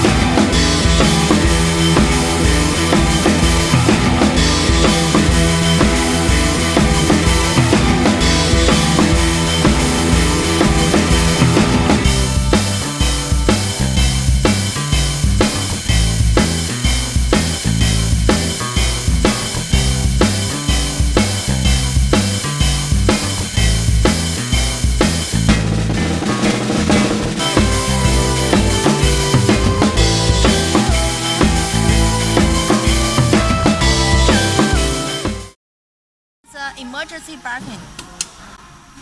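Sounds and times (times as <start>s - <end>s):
music with drum beat and bass: 0.0s - 35.6s.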